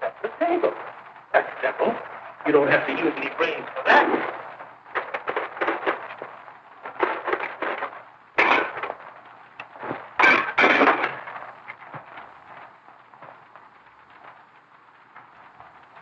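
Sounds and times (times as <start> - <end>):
clattering: 3.4 - 16.0
loud crashes: 3.7 - 11.8.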